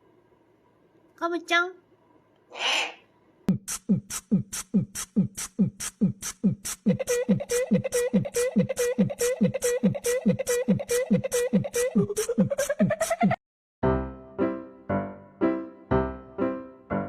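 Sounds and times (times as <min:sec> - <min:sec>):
hissy hi-hat hits: 0:03.5 - 0:06.9.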